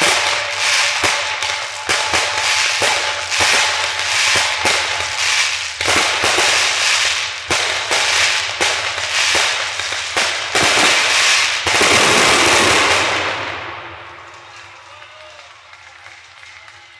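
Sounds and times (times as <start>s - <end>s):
fireworks bangs: 0.0s - 16.5s
fireworks crackling: 0.0s - 16.9s.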